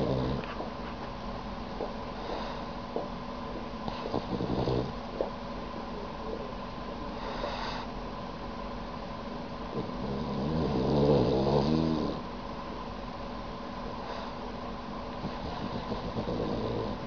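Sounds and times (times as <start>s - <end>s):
dog snoring: 0.0s - 0.7s, 3.9s - 5.3s, 7.2s - 7.9s, 9.7s - 12.3s, 15.1s - 17.0s
faint steady hum: 0.0s - 17.0s.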